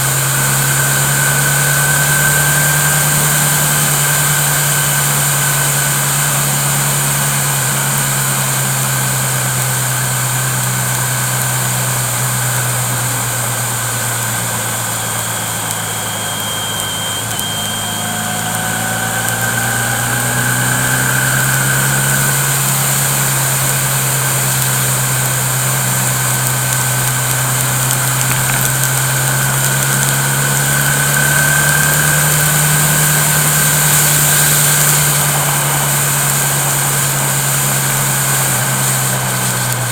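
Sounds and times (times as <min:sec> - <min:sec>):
road noise: 0:00.0 - 0:39.9
vehicle engine running: 0:00.0 - 0:39.9.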